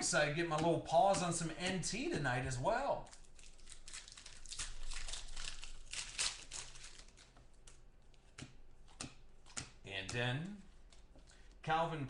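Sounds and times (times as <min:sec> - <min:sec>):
foil wrapper crinkling and tearing: 0:02.8 - 0:07.8.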